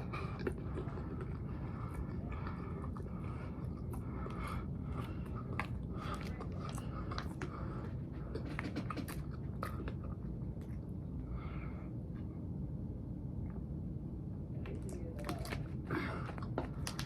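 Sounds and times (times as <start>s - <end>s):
person chewing and biting food: 0.0s - 11.0s
mouth clicks and crunches: 0.0s - 11.1s, 14.6s - 17.0s
steady low hum: 0.0s - 17.0s.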